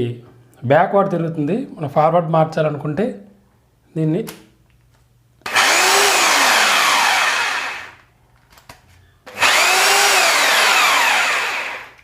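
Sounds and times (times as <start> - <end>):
electric hammer drill whining: 5.4 - 8.1, 9.3 - 12.0.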